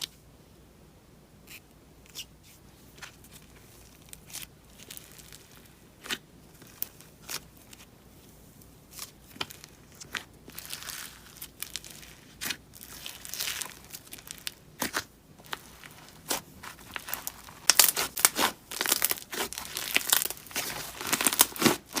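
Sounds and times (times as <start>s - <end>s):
slime sticky tearing: 10.1s - 22.0s.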